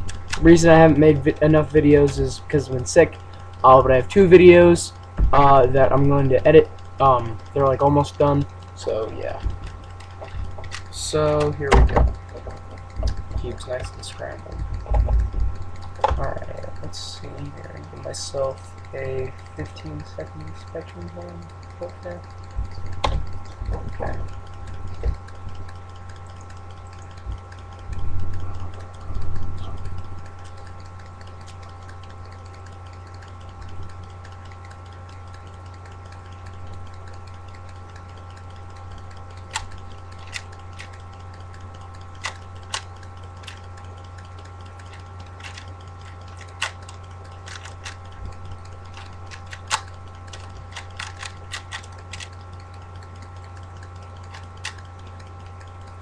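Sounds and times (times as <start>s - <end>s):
electrical hum: 0.0s - 56.0s
puzzle cube clicking: 38.4s - 41.2s, 42.0s - 55.2s.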